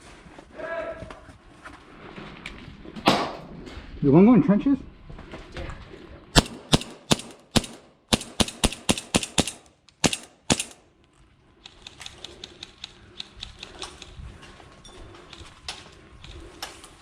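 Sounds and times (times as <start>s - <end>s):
airsoft gun shots: 6.4s - 10.8s.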